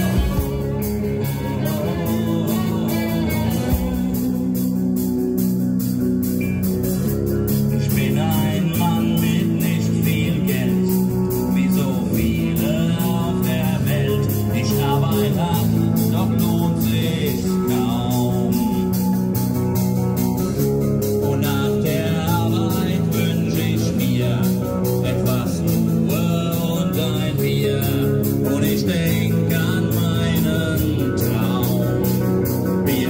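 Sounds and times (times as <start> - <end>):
person singing: 0.0 - 5.6, 7.5 - 33.0
guitar: 0.0 - 33.0
steady drum beat: 0.0 - 33.0.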